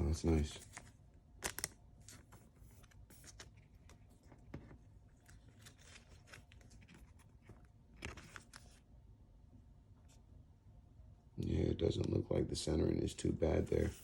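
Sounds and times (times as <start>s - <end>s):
cards rustling: 0.5s - 8.8s, 13.5s - 14.0s.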